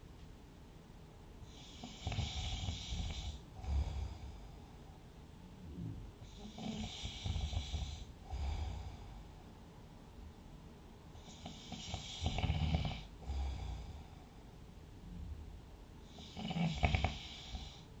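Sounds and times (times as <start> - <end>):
person snoring: 1.6 - 4.6, 6.2 - 9.2, 11.3 - 14.2, 16.1 - 17.8.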